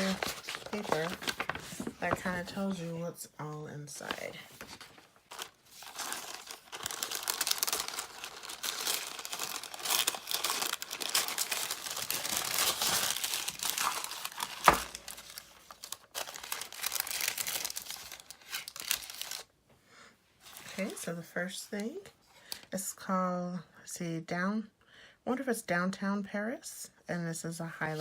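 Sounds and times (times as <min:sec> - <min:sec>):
paper packaging crinkling: 0:00.0 - 0:02.8, 0:04.0 - 0:19.5.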